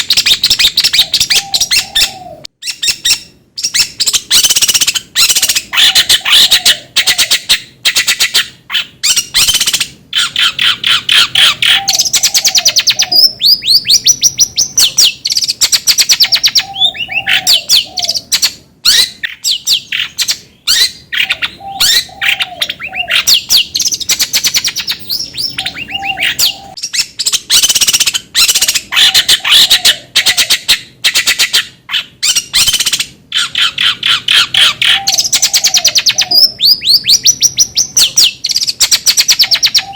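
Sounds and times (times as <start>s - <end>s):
shrike singing: 0.0s - 8.2s, 9.0s - 30.7s.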